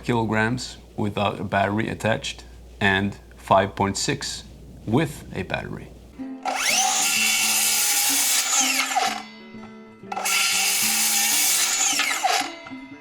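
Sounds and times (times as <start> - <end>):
circular saw motor whining: 6.4 - 9.3, 10.1 - 12.8.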